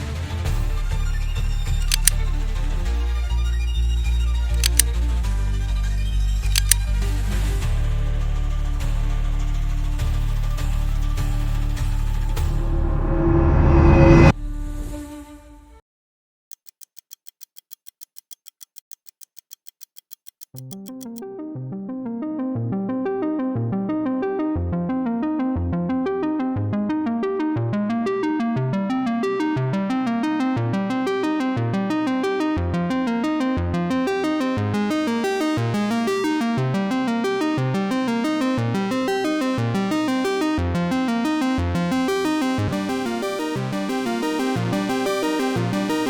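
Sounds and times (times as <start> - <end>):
electronic synthesizer music: 12.2 - 14.3, 25.0 - 46.0.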